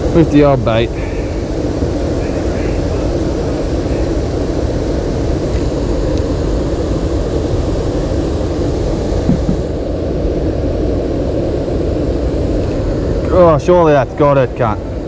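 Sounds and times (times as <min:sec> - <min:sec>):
low rumbling noise: 0:00.0 - 0:15.0
short knocks: 0:09.3 - 0:09.7.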